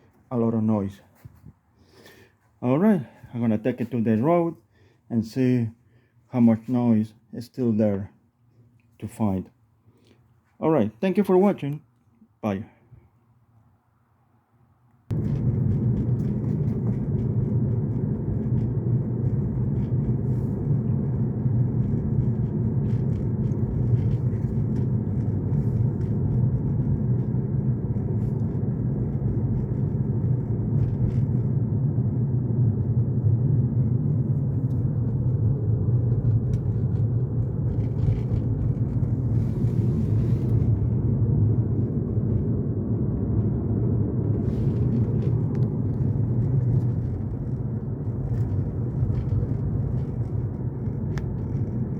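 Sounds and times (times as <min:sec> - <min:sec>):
road and tyre rumble: 0:15.1 - 0:51.9.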